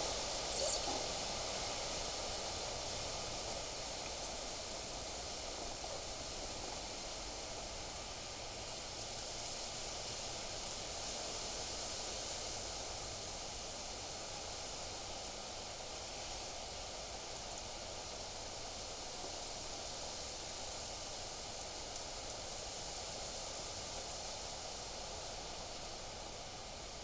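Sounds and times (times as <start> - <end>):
wind rustling through trees: 0.0 - 9.1.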